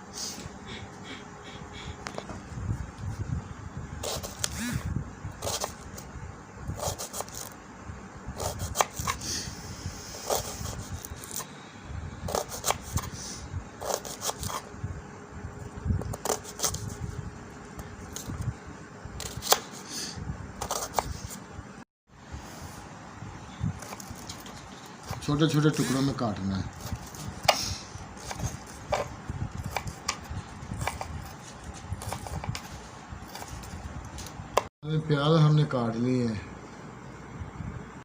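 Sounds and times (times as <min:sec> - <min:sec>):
knife chopping onions: 0:04.0 - 0:04.6, 0:05.4 - 0:06.0, 0:06.8 - 0:07.5, 0:08.4 - 0:09.3, 0:10.2 - 0:11.4, 0:12.3 - 0:13.2, 0:13.8 - 0:14.7, 0:16.0 - 0:17.0, 0:19.2 - 0:19.9, 0:20.6 - 0:21.4, 0:23.8 - 0:26.1, 0:26.7 - 0:32.7, 0:33.3 - 0:34.7.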